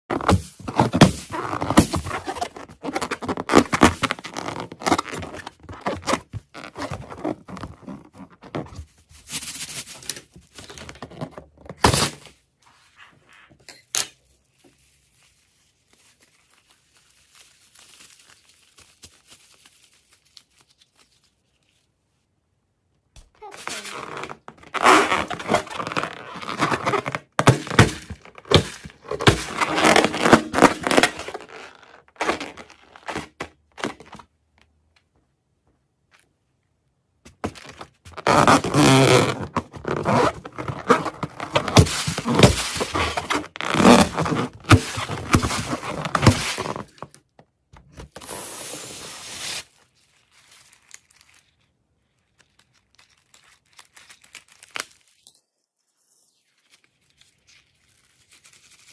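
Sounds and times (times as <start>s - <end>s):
slime crunching and scraping: 23.5s - 34.2s, 37.5s - 47.1s.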